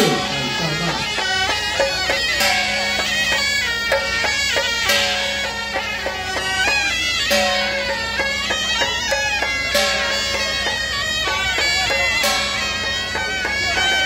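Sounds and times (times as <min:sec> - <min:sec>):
held low drone note: 0:00.0 - 0:04.1
shawm playing a melody: 0:00.0 - 0:14.0.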